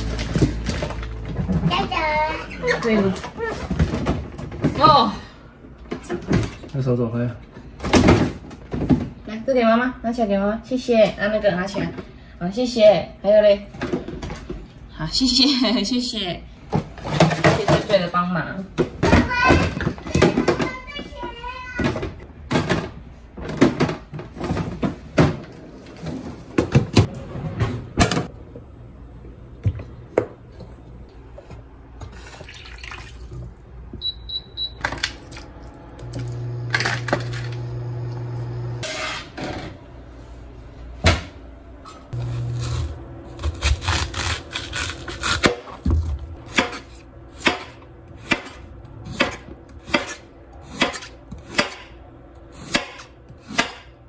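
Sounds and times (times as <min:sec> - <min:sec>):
appliance hum: 0:00.0 - 0:54.0
knife chopping on cutting board: 0:43.4 - 0:51.9.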